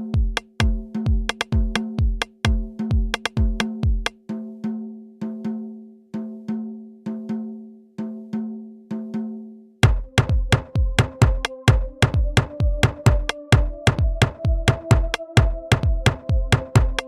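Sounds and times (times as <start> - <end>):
deep kick drum: 0.0 - 4.1, 9.8 - 17.0
wood-block-like percussion hits: 0.0 - 4.3, 9.8 - 17.0.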